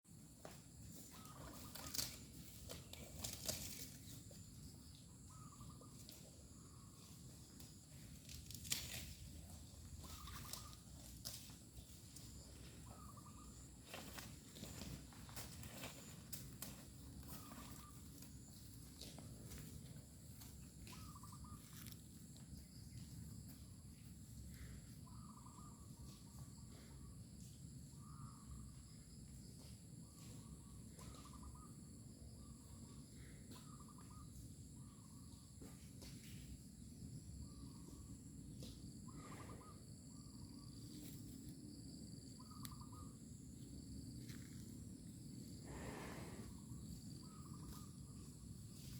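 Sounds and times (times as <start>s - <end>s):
high insect drone: 39.0s - 48.9s
bird chirping: 42.1s - 43.2s.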